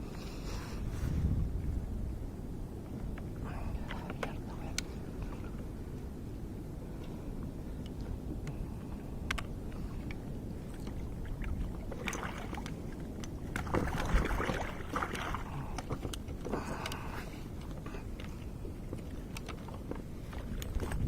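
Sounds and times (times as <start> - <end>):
steady low rumble: 0.0 - 21.0
water splashing around kayak: 0.0 - 21.0.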